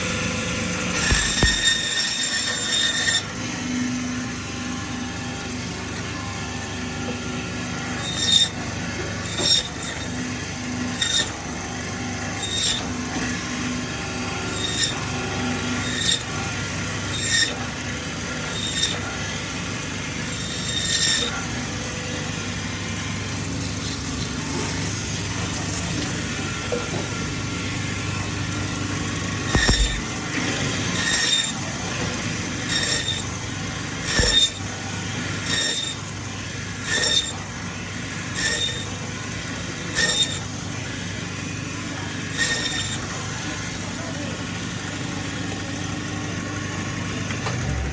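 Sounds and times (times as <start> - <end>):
meat bandsaw running: 0.0 - 47.9
bandsaw blade ringing: 0.9 - 3.3, 8.0 - 8.6, 9.2 - 10.2, 10.8 - 11.4, 12.4 - 13.0, 14.4 - 16.4, 17.1 - 17.6, 18.5 - 19.1, 20.2 - 21.4, 29.5 - 30.2, 31.0 - 31.6, 32.7 - 33.4, 34.0 - 34.7, 35.4 - 36.0, 36.8 - 37.4, 38.3 - 39.0, 39.9 - 40.5, 42.3 - 43.0
blade screeching through bone: 0.9 - 3.4, 7.8 - 11.6, 12.2 - 13.5, 14.2 - 19.2, 20.2 - 21.4, 23.3 - 25.0, 29.3 - 31.7, 32.6 - 34.7, 35.4 - 36.1, 36.8 - 37.5, 38.2 - 39.0, 39.9 - 40.5, 42.3 - 43.1.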